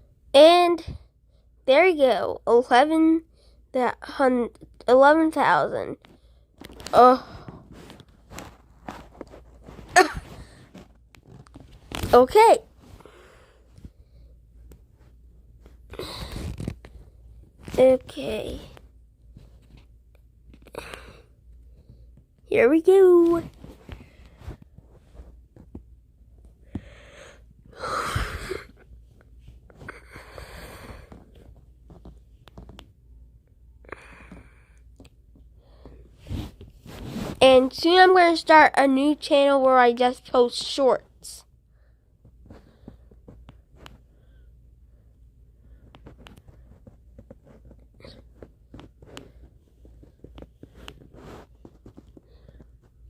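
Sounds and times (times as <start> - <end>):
low steady hum: 0.0 - 53.0
person breathing: 12.9 - 14.5, 20.7 - 22.2, 26.6 - 28.8, 29.8 - 31.3, 33.8 - 34.9, 35.6 - 36.3, 44.0 - 47.0, 52.2 - 52.8.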